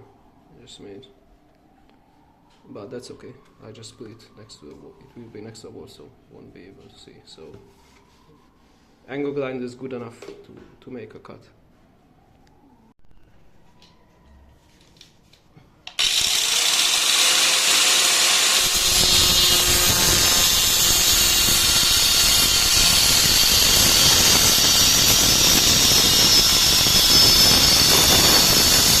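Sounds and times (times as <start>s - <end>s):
angle grinder cutting planks: 15.9s - 29.0s.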